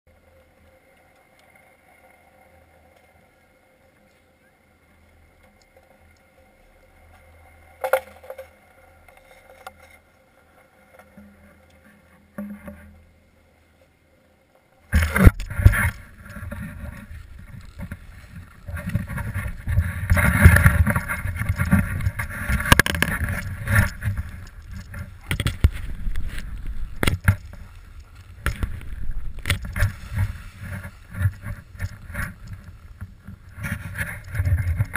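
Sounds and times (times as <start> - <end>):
faint steady hum: 0.1 - 34.9
skis scraping over packed snow: 14.9 - 34.9.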